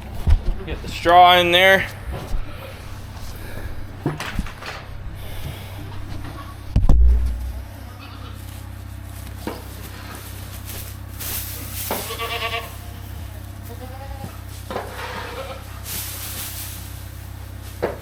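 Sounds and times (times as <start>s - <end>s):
steady low rumble: 0.0s - 17.8s
goats bleating: 5.8s - 6.8s, 7.6s - 8.6s, 11.6s - 15.9s
loud thump: 6.7s - 7.6s.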